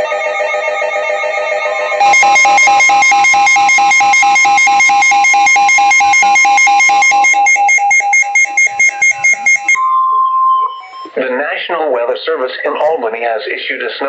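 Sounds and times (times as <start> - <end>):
steady warning alarm tone: 0.0 - 11.2
rapid electronic beeping: 0.0 - 11.6.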